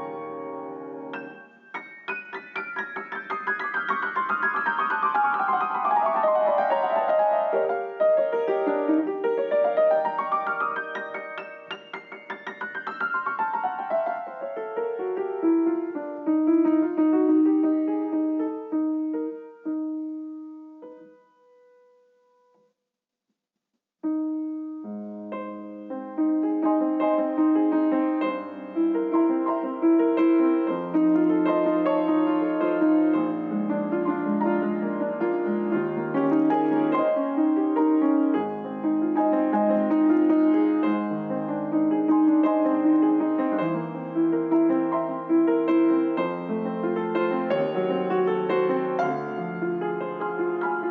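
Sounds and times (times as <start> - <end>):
solo piano music: 0.0 - 22.7, 24.0 - 50.9.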